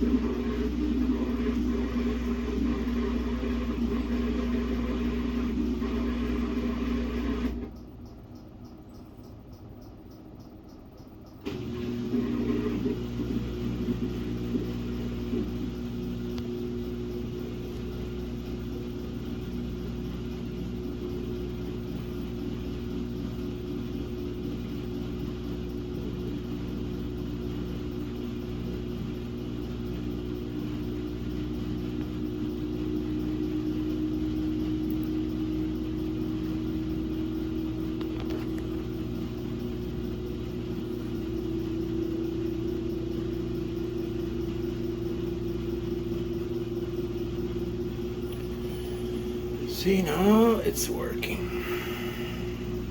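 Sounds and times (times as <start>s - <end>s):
washing machine motor hum: 0.0s - 52.9s.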